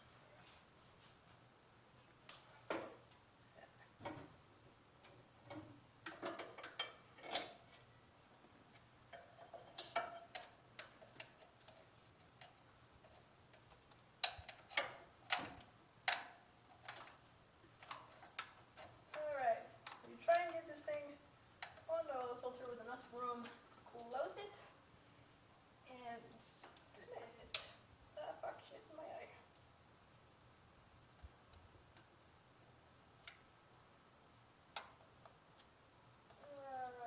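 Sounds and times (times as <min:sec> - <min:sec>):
hand tools clicking and knocking: 0:05.0 - 0:07.9, 0:08.5 - 0:20.7.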